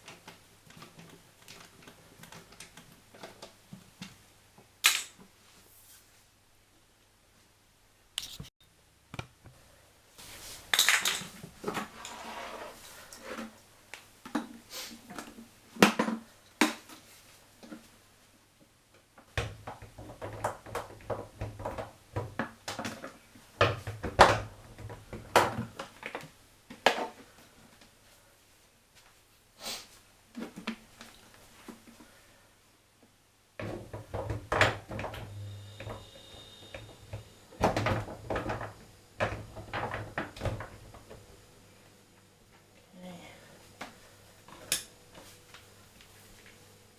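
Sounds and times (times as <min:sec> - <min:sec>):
hand tools and parts clicking: 0:04.8 - 0:05.2.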